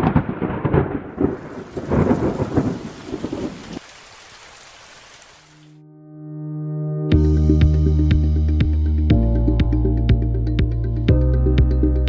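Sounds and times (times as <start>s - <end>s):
thunder rumbling: 0.0s - 3.9s
steady rain hiss: 0.7s - 5.8s.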